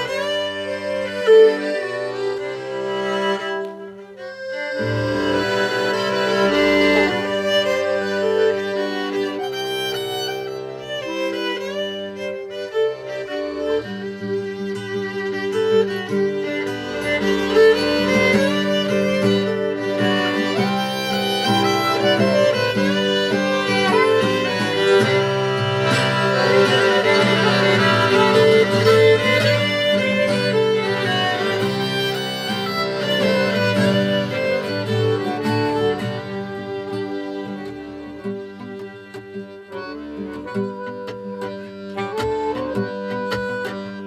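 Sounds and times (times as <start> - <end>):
accordion: 0.0 - 44.0
guitar: 0.0 - 44.0
saxophone: 0.0 - 44.0
violin melody: 0.0 - 44.0.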